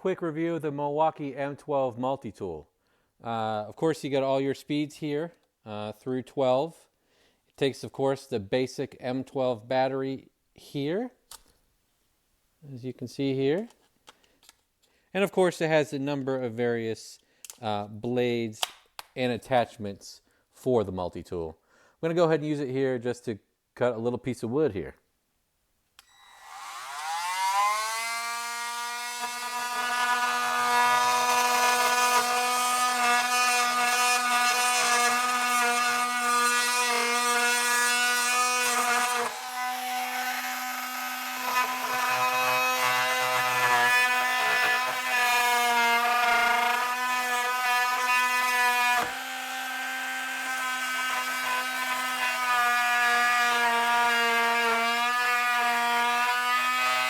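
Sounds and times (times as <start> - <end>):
oscillating multi-tool cutting wood: 26.0 - 57.0.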